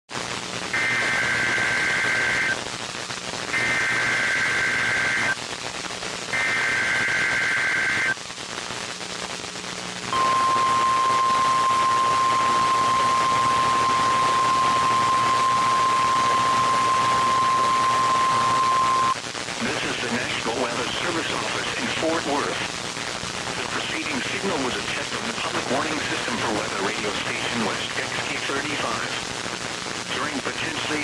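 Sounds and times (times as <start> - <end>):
radio hiss: 0.2 - 2.6, 3.5 - 5.4, 6.2 - 8.3, 9.0 - 31.0
steady warning alarm tone: 10.1 - 19.2
buzzy two-pitch digital warble: 10.2 - 19.2.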